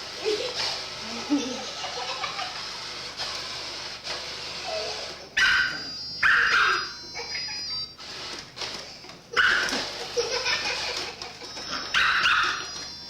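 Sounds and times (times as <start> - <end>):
dog barking: 5.4 - 6.9, 12.0 - 12.7.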